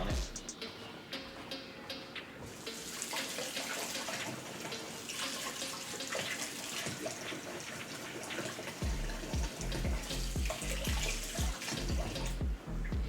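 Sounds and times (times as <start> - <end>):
faucet running into a sink: 2.6 - 12.4.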